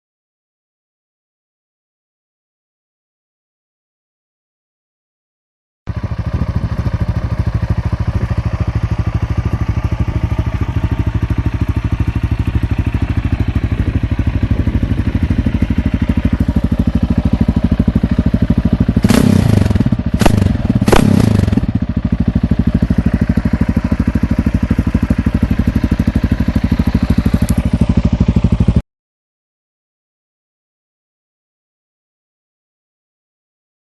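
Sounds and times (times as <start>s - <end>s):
motorcycle engine idling and revving: 5.9s - 28.8s.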